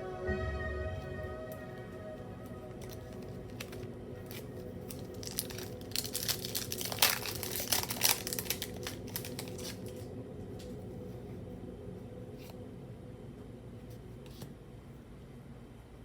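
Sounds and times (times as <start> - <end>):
foil wrapper crinkling and tearing: 2.7 - 10.1.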